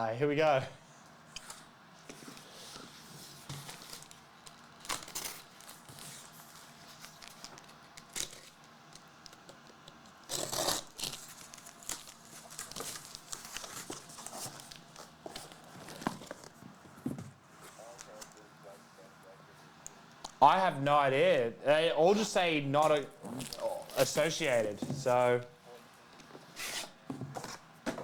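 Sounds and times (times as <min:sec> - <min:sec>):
packaging clicks and rustles: 0:01.4 - 0:17.0
plastic wrapping tearing and crinkling: 0:03.5 - 0:16.6, 0:23.0 - 0:24.5.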